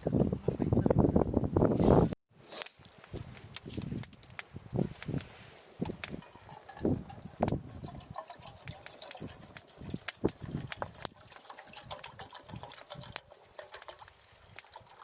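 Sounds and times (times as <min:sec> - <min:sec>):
raindrops tapping: 0:06.0 - 0:15.0.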